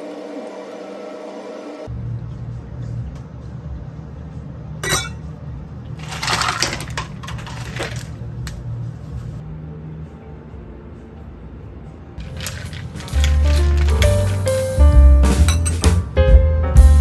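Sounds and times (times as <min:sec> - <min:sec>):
small hard objects clinking: 0:06.0 - 0:08.2, 0:12.2 - 0:14.6.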